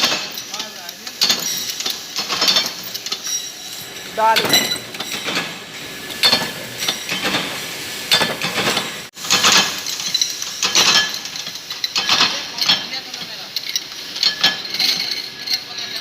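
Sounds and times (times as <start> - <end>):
metal parts clinking: 0.0 - 5.6, 9.3 - 16.0.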